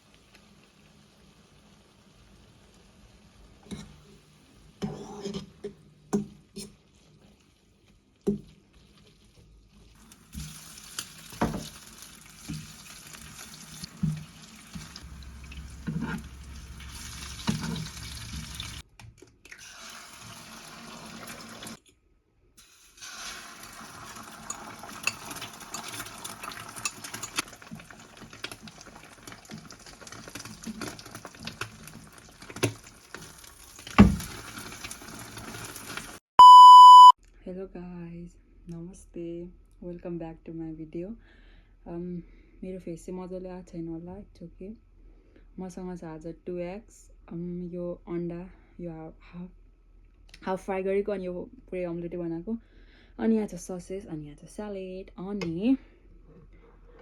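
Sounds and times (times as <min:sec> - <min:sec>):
water running: 0:08.3 - 0:18.8, 0:19.7 - 0:21.8
pots and utensils clinking: 0:24.3 - 0:27.6.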